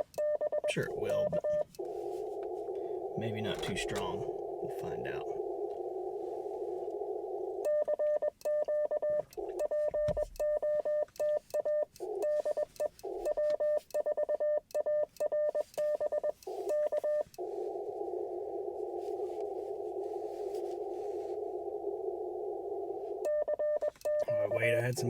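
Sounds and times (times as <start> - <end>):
morse code beep: 0.0 - 25.0
radio band hiss: 0.7 - 7.6, 16.4 - 23.2, 24.2 - 25.0.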